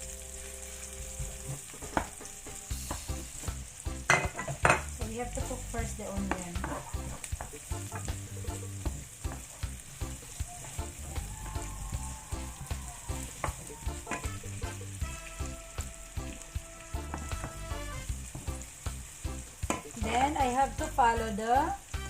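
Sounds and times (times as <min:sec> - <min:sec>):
onions sizzling in hot oil: 0:00.0 - 0:22.0
ladle tapping and scraping pan: 0:04.1 - 0:05.0, 0:06.2 - 0:08.3, 0:13.4 - 0:14.4, 0:17.0 - 0:17.7.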